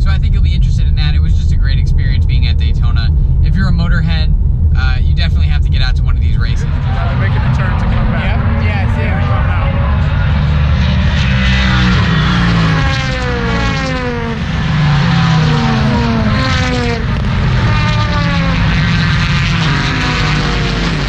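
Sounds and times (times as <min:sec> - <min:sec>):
rumble of cars on track: 0:00.0 - 0:21.0
race cars passing at speed: 0:06.5 - 0:21.0.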